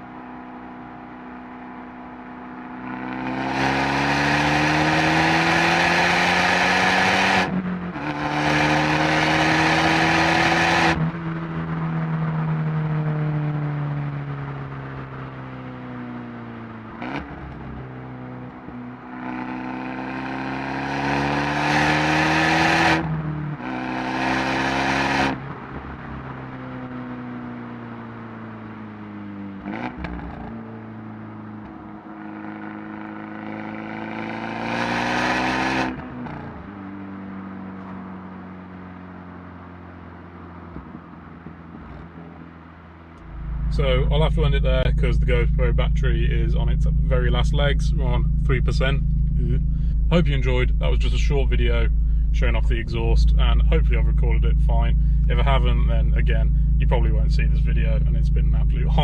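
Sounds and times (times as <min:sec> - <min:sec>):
car engine revving: 0:00.0 - 0:59.0
exhaust cracks: 0:29.6 - 0:33.3, 0:36.0 - 0:59.0.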